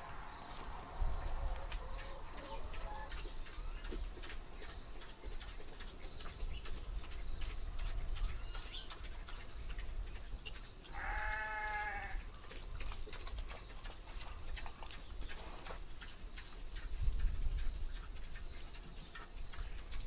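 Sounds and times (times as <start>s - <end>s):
farm animal bleating: 10.9s - 12.2s.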